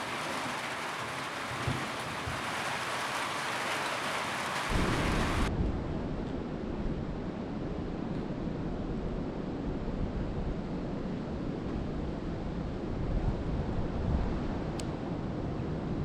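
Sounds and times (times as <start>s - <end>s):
heavy rain hissing: 0.0s - 5.5s.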